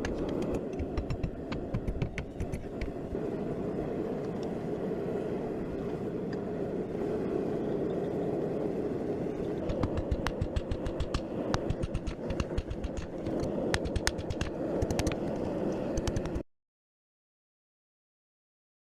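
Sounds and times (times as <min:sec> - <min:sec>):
sharp clicks and taps: 0:00.0 - 0:03.0, 0:09.7 - 0:16.4
forge burner roaring: 0:00.0 - 0:16.4.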